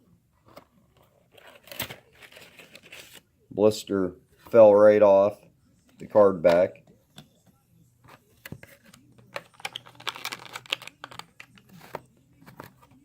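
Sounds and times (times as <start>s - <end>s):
plastic blister pack crackling: 9.3s - 11.9s.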